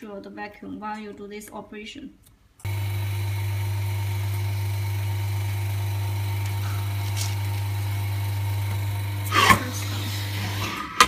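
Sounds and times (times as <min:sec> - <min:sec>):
vacuum pump humming and hissing: 0:02.7 - 0:11.0.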